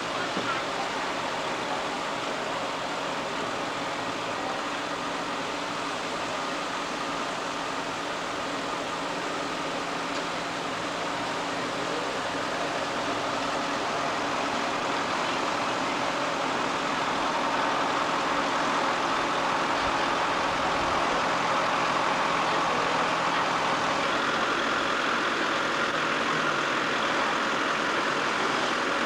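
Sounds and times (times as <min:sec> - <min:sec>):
road noise: 0:00.0 - 0:29.0
vehicle engine: 0:00.0 - 0:29.0.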